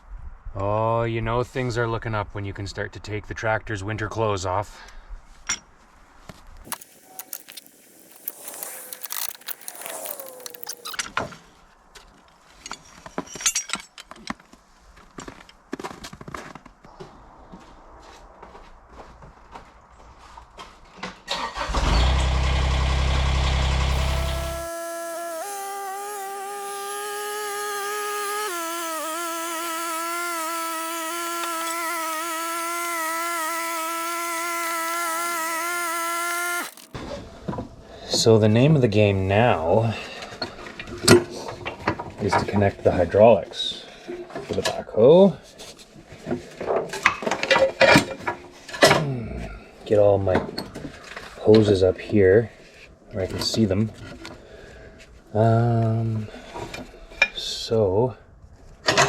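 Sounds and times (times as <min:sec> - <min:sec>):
rasping noise: 0:06.7 - 0:11.0, 0:23.9 - 0:37.0
metal parts clinking and rattling: 0:12.6 - 0:14.3.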